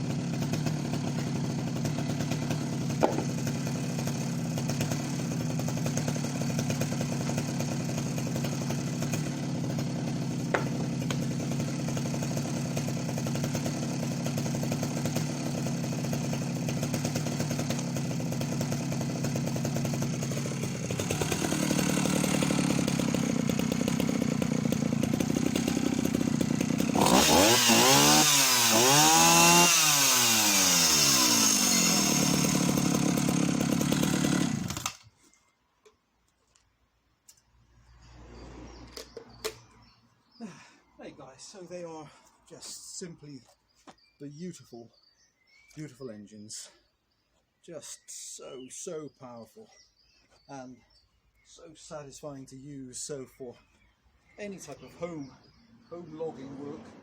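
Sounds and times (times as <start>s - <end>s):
chainsaw cutting wood: 0.0s - 35.2s.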